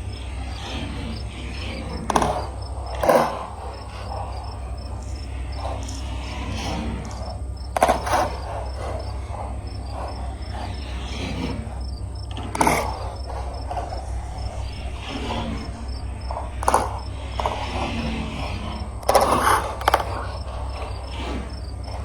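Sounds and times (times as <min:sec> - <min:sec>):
crickets chirping: 0:00.0 - 0:22.0
marbles rolling and clacking: 0:13.7 - 0:20.8.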